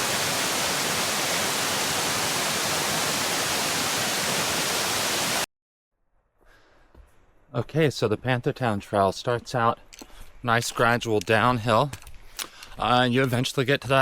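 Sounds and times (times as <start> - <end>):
waterfall rushing: 0.0 - 5.5.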